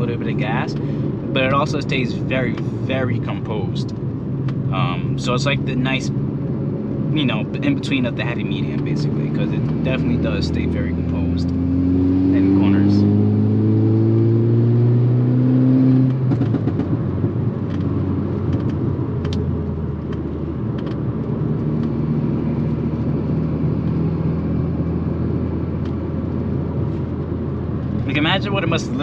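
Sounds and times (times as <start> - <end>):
exhaust pops and crackles: 0.0 - 6.0, 7.1 - 10.6, 16.0 - 23.2
car engine accelerating: 0.0 - 29.0.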